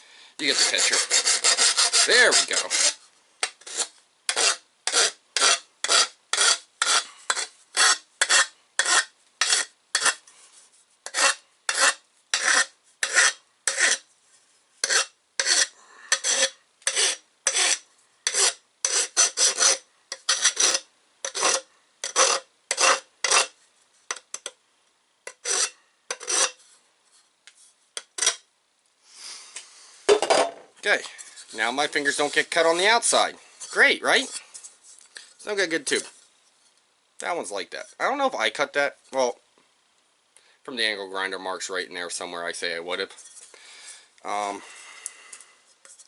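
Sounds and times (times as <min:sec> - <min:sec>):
file rasping on metal tube: 0:00.4 - 0:10.2, 0:11.0 - 0:14.1, 0:14.8 - 0:24.5, 0:25.3 - 0:26.6, 0:28.0 - 0:28.4.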